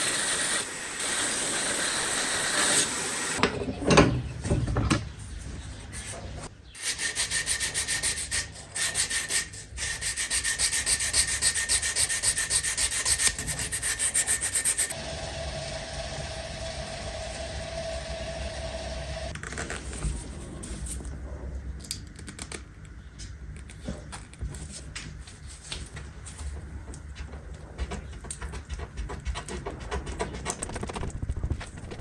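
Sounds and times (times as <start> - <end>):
steady hum: 3.4 - 32.0
hand sanding strokes: 5.6 - 15.0.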